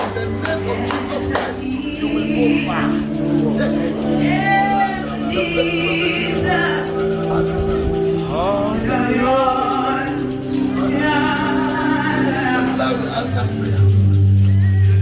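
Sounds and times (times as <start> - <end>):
gospel singing voices: 0.0 - 15.0
keyboard chords: 0.0 - 15.0
shaker rattle: 0.0 - 15.0.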